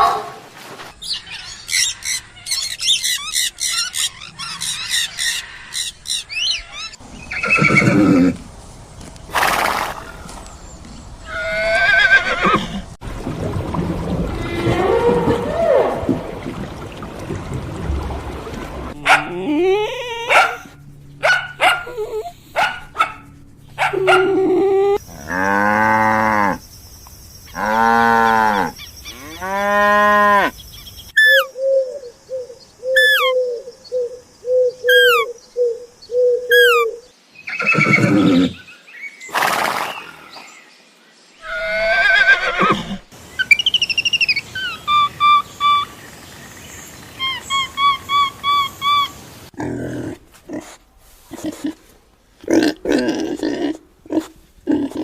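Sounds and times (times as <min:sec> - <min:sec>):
chirping: 0:32.9 - 0:35.8, 0:36.4 - 0:37.0
long drawn-out calls: 0:47.2 - 0:49.3.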